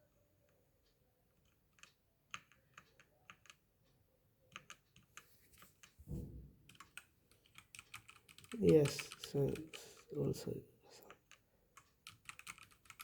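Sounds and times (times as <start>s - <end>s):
dull low thump: 6.0s - 6.7s
mechanical keyboard keys clicking: 6.7s - 9.8s, 11.1s - 13.0s.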